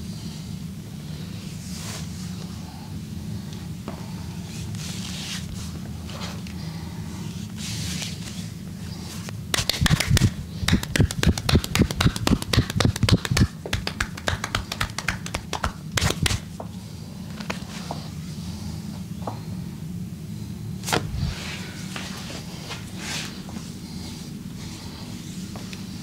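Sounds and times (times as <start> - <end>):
hands tapping rapidly on body: 9.5 - 16.5.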